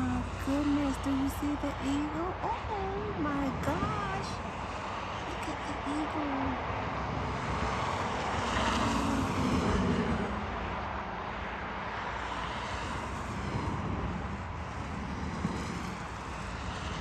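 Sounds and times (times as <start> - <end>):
vehicle engine running: 0.0 - 11.7
road noise: 0.0 - 17.0.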